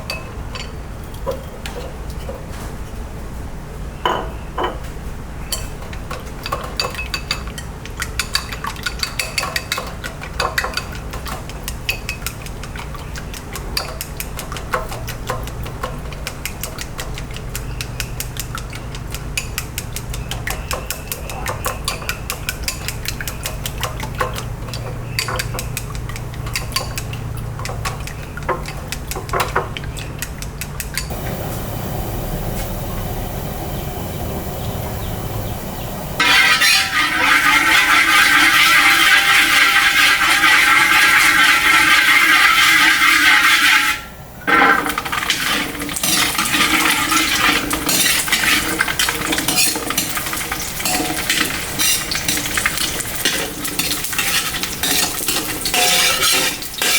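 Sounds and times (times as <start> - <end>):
steady low hum: 31.1 - 37.2
metal spatula scraping a wok: 36.2 - 56.9.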